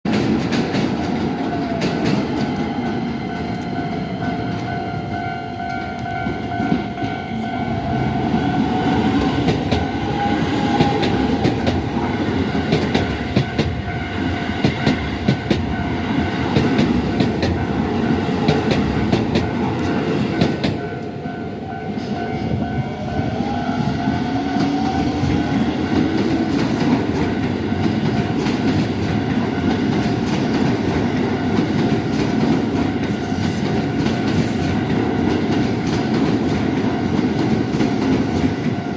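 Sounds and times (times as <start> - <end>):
train wheels clacking on rails: 0.1 - 38.9
train whine: 0.1 - 38.9
level crossing warning bell: 1.5 - 26.7.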